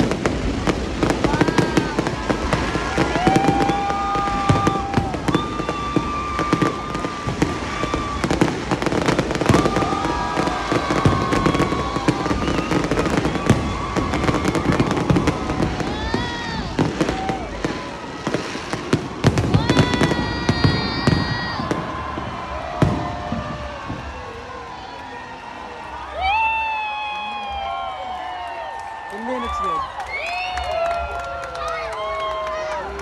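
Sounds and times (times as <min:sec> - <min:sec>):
fireworks whistling: 0:00.0 - 0:25.4
fireworks banging and crackling: 0:00.0 - 0:33.0.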